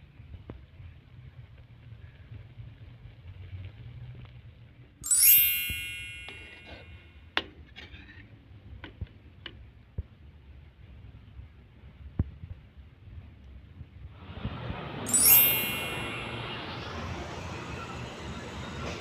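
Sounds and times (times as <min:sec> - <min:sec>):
ringing clink of kitchenware: 0:05.1 - 0:07.1, 0:15.1 - 0:16.6.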